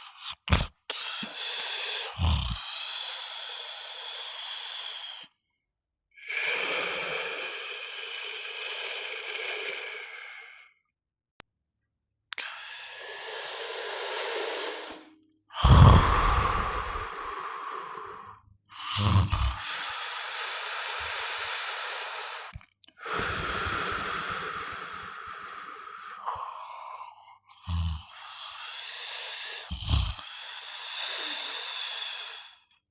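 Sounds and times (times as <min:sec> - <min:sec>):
person snoring: 0:00.0 - 0:05.3, 0:06.2 - 0:10.7, 0:12.4 - 0:32.7.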